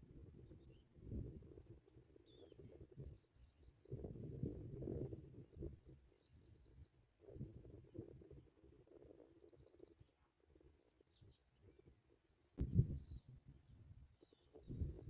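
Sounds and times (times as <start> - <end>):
small birds chirping: 0.0 - 15.0
sudden thump: 12.6 - 13.0
low rustling rumble: 12.6 - 13.2.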